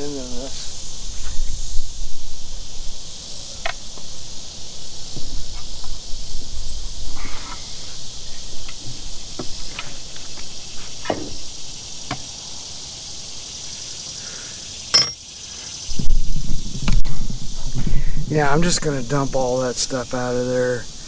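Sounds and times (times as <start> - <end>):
crickets chirring: 0.0 - 21.0
metal parts knocking and clinking: 15.0 - 15.2.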